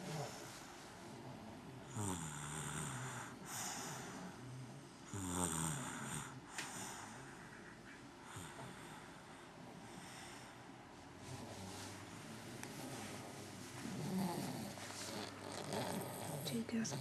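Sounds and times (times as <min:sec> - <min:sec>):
baby snoring: 0:00.0 - 0:00.5, 0:01.9 - 0:04.4, 0:05.1 - 0:07.2, 0:13.8 - 0:17.0.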